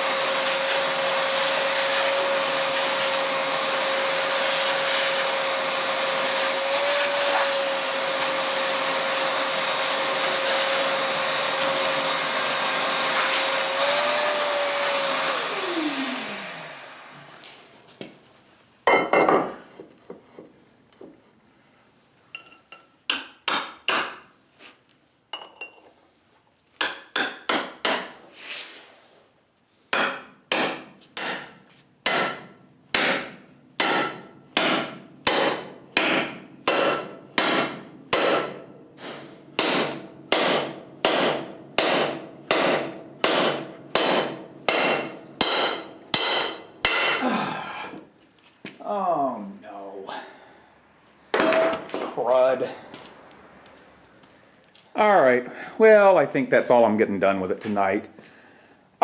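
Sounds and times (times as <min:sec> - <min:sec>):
electric drill running: 0:00.0 - 0:17.5
hammer striking steel spikes: 0:26.8 - 0:28.3, 0:29.9 - 0:47.2.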